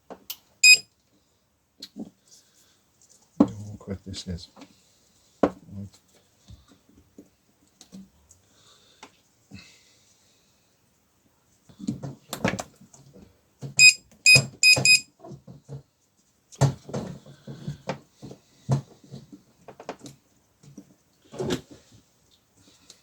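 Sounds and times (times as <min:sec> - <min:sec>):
short high electronic beeps: 0:00.6 - 0:00.8, 0:13.8 - 0:15.0.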